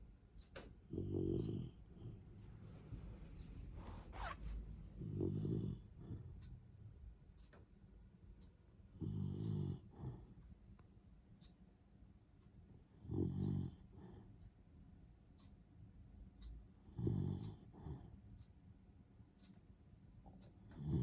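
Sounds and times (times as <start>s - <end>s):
dog snoring: 0.8s - 2.3s, 3.6s - 6.4s, 8.9s - 10.4s, 12.9s - 14.3s, 16.8s - 18.1s, 20.7s - 21.0s.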